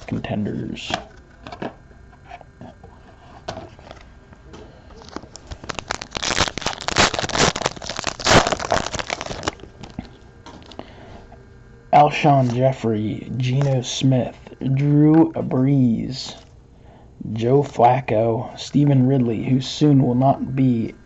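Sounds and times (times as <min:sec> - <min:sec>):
card pack wrapper tearing: 0:05.0 - 0:10.7.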